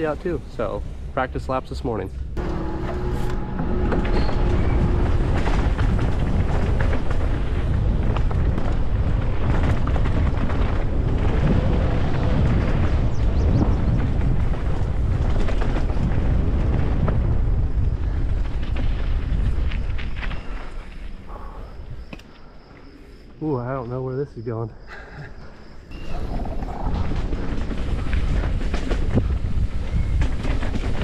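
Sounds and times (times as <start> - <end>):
wind buffeting microphone: 2.3 - 22.2, 25.9 - 31.0
mountain bike clattering over trail: 4.1 - 21.1.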